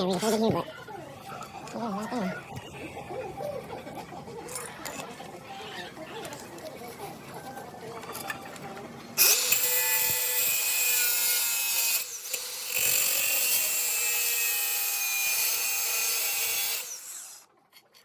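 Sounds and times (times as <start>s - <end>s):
power tool cutting: 9.2s - 17.4s.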